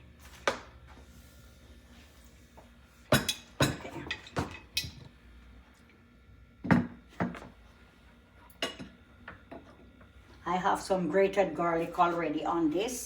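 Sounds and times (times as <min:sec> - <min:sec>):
utensils and dishes clinking: 0:03.1 - 0:05.0.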